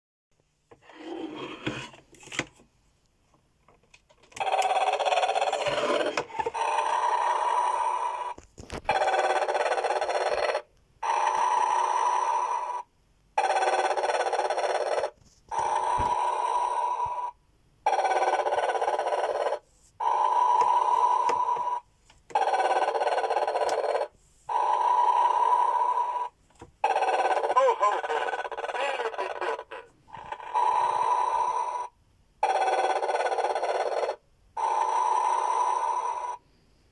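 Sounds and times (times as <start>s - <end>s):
buzzy snoring from small speaker: 0.8s - 1.9s, 5.0s - 8.4s.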